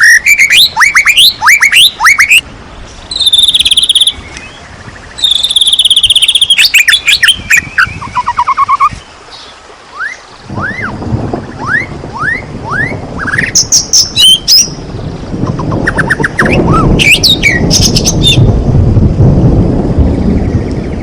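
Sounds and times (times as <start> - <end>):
bird singing whistles and trills: 0.0 - 2.4, 3.1 - 4.6, 5.2 - 14.8, 15.4 - 18.5
low rumbling noise: 10.4 - 21.0.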